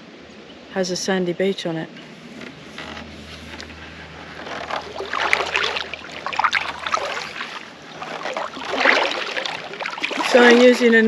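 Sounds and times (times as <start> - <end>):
paddle splashing through water: 2.5 - 11.0.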